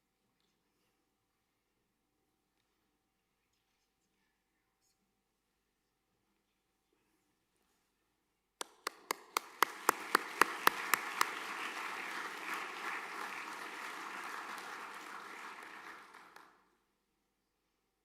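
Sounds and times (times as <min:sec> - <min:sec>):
audience applauding: 0:08.6 - 0:16.7.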